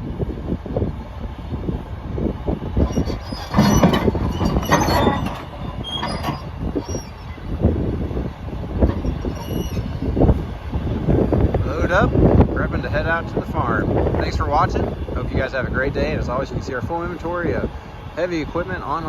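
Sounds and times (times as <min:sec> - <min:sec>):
bulldozer engine running: 0:00.0 - 0:19.0
clatter of track links: 0:02.8 - 0:07.4
short metallic squeals: 0:02.8 - 0:10.4.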